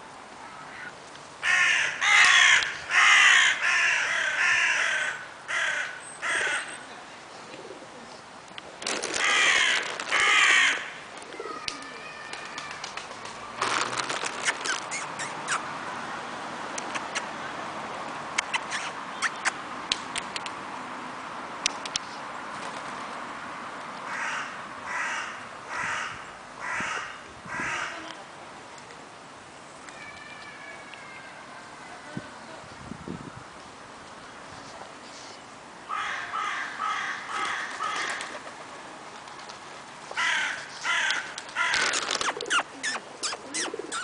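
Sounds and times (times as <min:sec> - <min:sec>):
crows cawing: 0:00.7 - 0:06.8, 0:09.2 - 0:12.7, 0:24.1 - 0:28.0, 0:35.9 - 0:38.4, 0:40.2 - 0:42.0.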